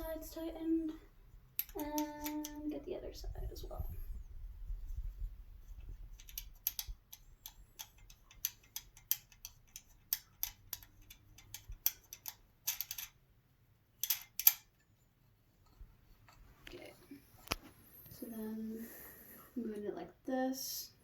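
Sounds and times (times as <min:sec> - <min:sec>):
small screw clicking as turned: 0:01.6 - 0:02.7, 0:05.7 - 0:13.2, 0:14.0 - 0:14.8.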